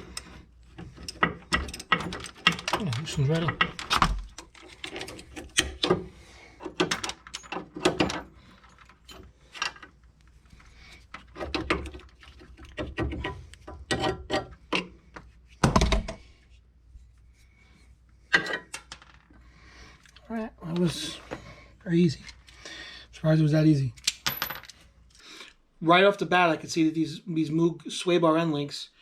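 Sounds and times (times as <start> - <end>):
hand tools clicking and clinking: 0.0 - 6.0, 6.6 - 9.9.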